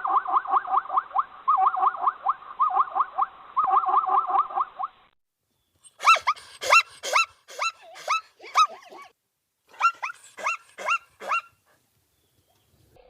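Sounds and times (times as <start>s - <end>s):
animal squeaky calls: 0.0s - 4.9s.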